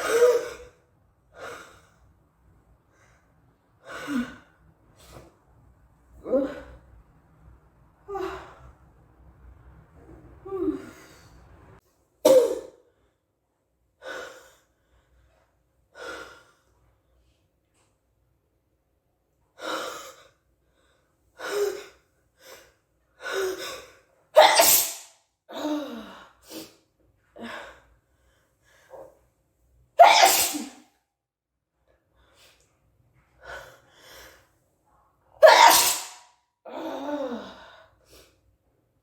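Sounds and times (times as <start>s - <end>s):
person sneezing: 12.2s - 12.8s, 24.4s - 25.1s, 30.0s - 30.8s, 35.4s - 36.2s.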